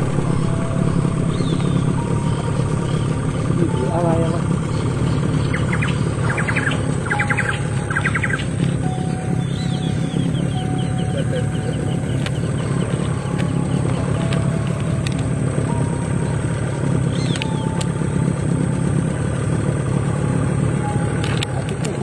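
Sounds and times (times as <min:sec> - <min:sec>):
boat engine idling: 0:00.0 - 0:22.0
bird chirping: 0:00.9 - 0:14.9, 0:17.1 - 0:17.8.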